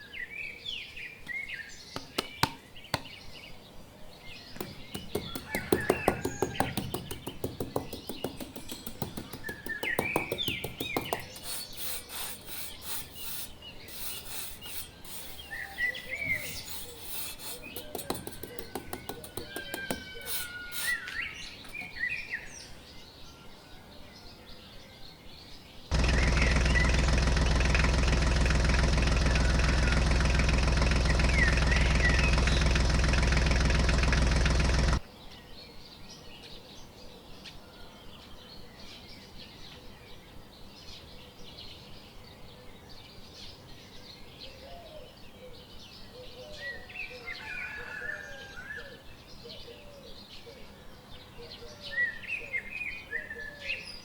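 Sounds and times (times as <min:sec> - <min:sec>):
birds chirping faintly: 0:00.0 - 0:28.0
small electric motor running: 0:10.2 - 0:21.1, 0:25.9 - 0:35.0.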